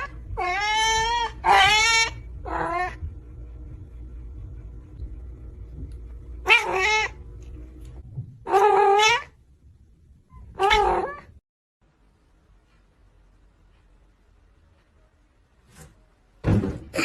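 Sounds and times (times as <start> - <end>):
cat meowing loudly: 0.0 - 2.9.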